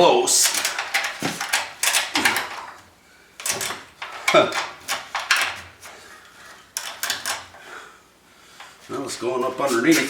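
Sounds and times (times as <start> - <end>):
metal parts scraping and clunking: 0.3 - 7.6.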